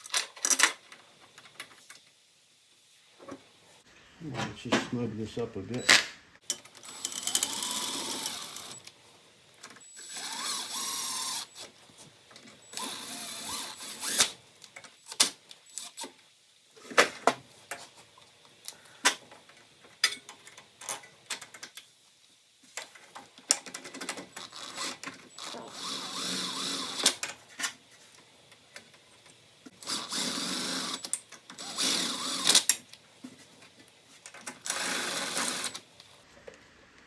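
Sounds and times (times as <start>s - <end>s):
power driver whirring: 9.8s - 11.6s, 12.6s - 14.4s, 24.5s - 27.2s, 29.8s - 32.7s.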